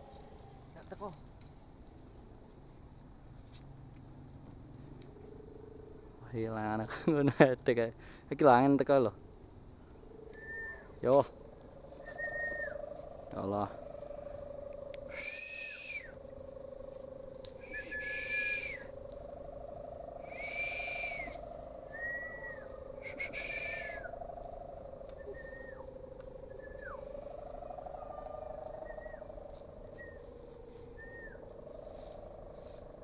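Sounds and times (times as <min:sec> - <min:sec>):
kite hummer droning: 0:10.1 - 0:33.0
hissing bursts with whistle: 0:10.4 - 0:11.2, 0:12.0 - 0:12.8, 0:15.1 - 0:16.2, 0:17.5 - 0:19.0, 0:20.2 - 0:24.2, 0:25.2 - 0:25.9, 0:30.0 - 0:32.8.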